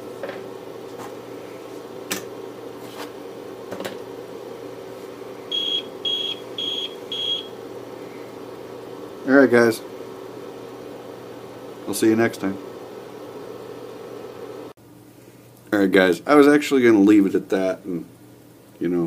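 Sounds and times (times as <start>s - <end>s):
low electrical hum: 0.0s - 19.0s
high-pitched alarm beeps: 5.5s - 7.5s.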